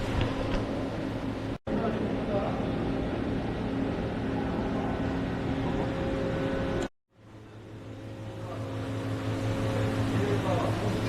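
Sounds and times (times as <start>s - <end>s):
machining centre humming: 0.0s - 11.0s.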